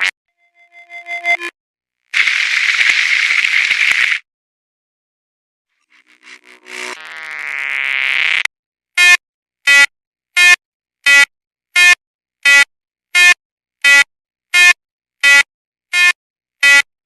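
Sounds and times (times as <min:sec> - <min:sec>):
rising tone: 0:05.9 - 0:07.5.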